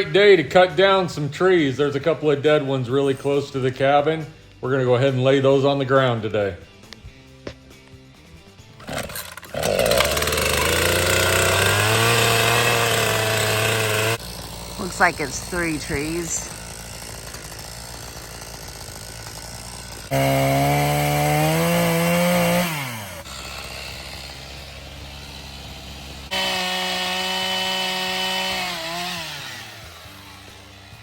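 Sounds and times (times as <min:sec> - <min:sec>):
chainsaw idling and revving: 0:08.8 - 0:31.0.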